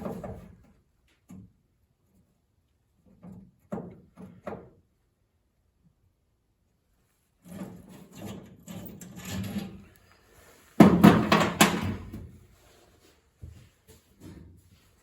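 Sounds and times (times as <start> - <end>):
tools knocking and rattling: 10.8 - 12.3.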